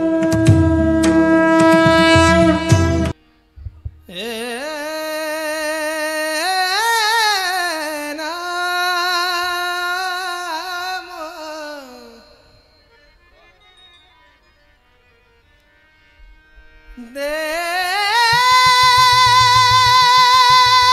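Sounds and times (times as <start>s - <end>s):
reedy harmonium chord: 0.0s - 4.3s, 12.6s - 19.5s
drum strokes: 0.2s - 4.1s
soft low thumps: 2.2s - 4.1s
person singing unaccompanied: 4.0s - 14.4s, 16.8s - 20.9s.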